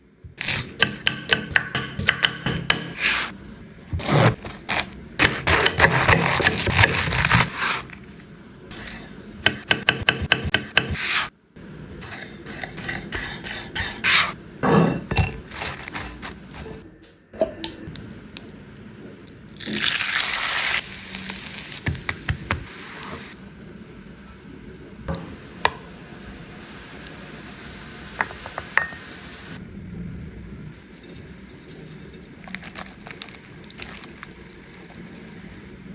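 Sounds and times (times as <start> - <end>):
wet squishing and scraping: 32.2 - 35.4.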